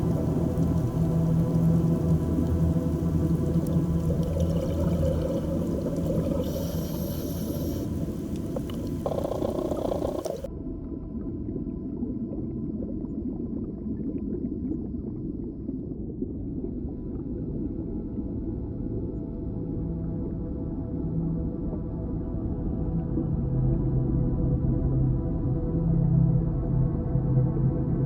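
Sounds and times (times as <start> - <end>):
bright hiss: 0.0 - 10.5
underwater rumbling wash: 0.0 - 18.8.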